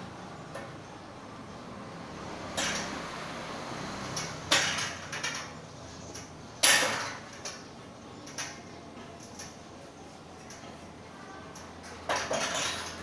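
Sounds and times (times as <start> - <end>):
hard objects clacking: 4.2 - 9.7, 11.5 - 13.0.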